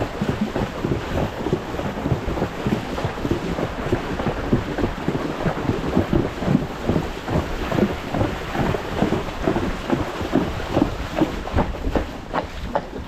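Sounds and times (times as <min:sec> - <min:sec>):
horse splashing through water: 0:00.0 - 0:13.0
wind buffeting microphone: 0:00.0 - 0:13.0.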